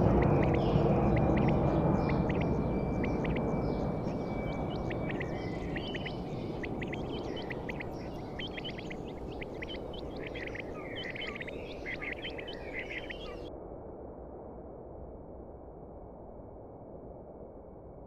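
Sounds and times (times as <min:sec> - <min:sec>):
bird chirps: 0:00.0 - 0:13.5
low rumble: 0:00.0 - 0:14.8.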